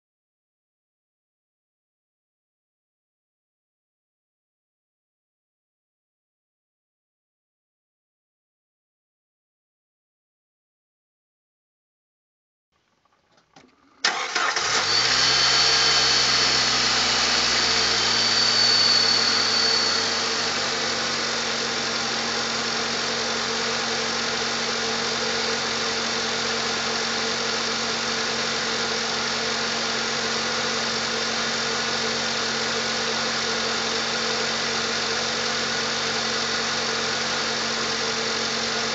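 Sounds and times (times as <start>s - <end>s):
car engine starting: 13.1s - 38.9s
car engine idling: 13.8s - 38.9s.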